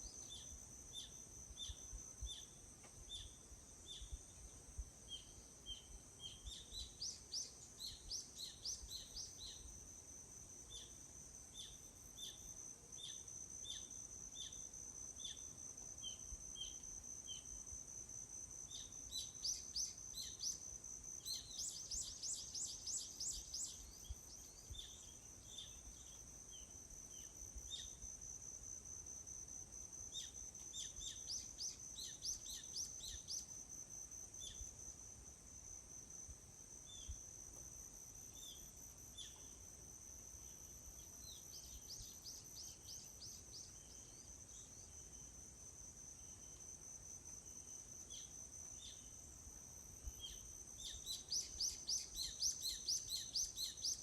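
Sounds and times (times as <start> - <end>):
insects buzzing: 0.0 - 54.0
bird chirping: 21.2 - 28.0, 50.2 - 54.0.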